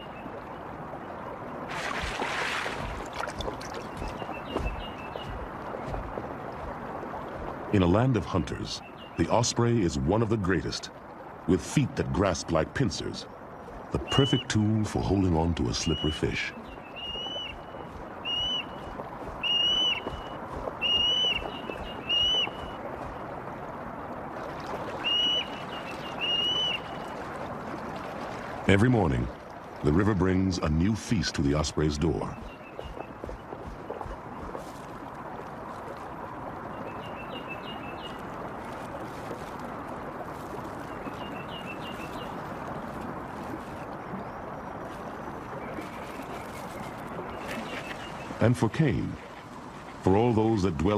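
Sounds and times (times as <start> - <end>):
river water rushing: 0.0 - 50.9
bird chirping: 3.8 - 6.0, 15.4 - 22.8, 31.8 - 34.6
osprey whistled calls: 3.8 - 6.0, 13.2 - 23.3, 25.0 - 27.2.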